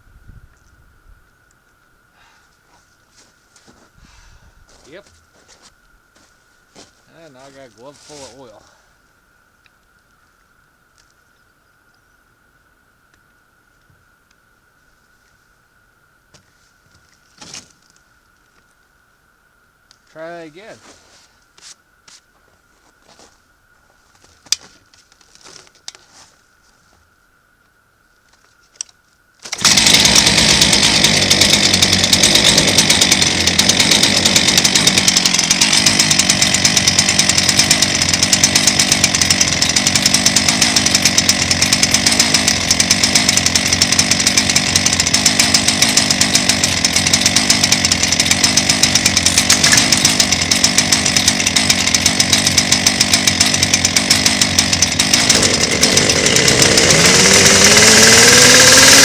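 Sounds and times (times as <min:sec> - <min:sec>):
chainsaw running at high revs: 0:29.5 - 0:59.0.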